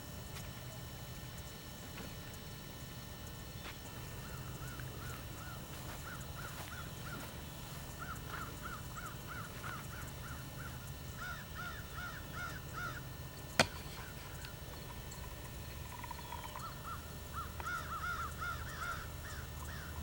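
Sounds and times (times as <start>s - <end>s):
bird calling: 3.2s - 20.0s.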